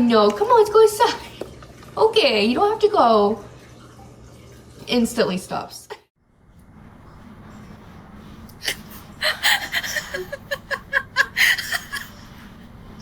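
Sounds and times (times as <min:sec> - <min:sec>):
person laughing: 0:08.6 - 0:12.4.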